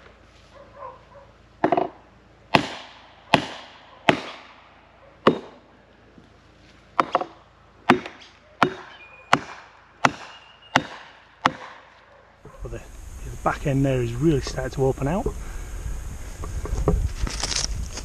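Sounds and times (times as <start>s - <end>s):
hammer striking a wedge: 2.6s - 4.5s, 5.2s - 5.6s, 7.0s - 11.7s.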